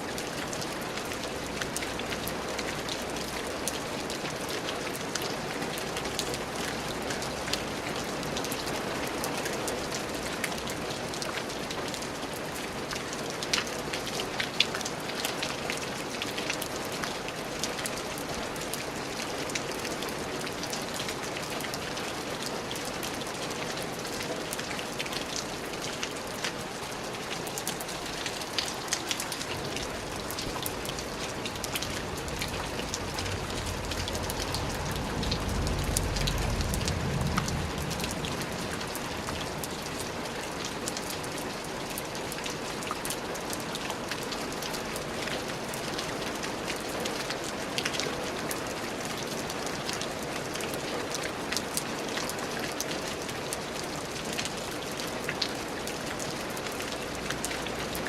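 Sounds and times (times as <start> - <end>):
steady rainfall: 0.0 - 58.0
low rumble: 31.0 - 39.6.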